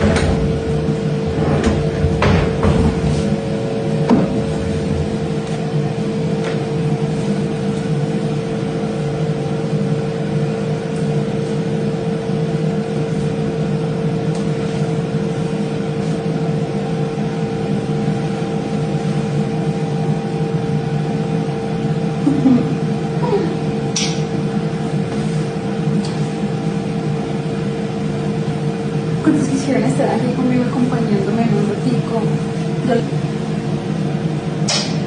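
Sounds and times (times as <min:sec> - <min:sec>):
steady machine hum: 0:00.0 - 0:35.0.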